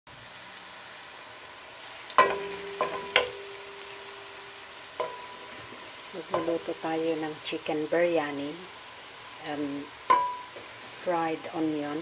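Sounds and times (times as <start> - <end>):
food sizzling in hot oil: 0.1 - 12.0
metal utensil clanking on pan: 2.1 - 7.2, 10.0 - 10.7.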